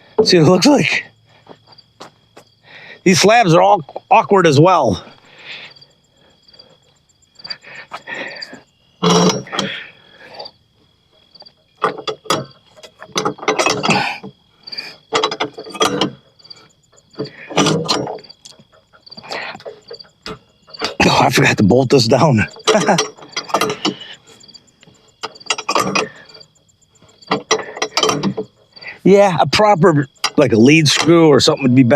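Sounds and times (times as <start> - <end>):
crickets chirping: 0.0 - 31.9
wooden slabs knocking and scraping: 22.6 - 24.1.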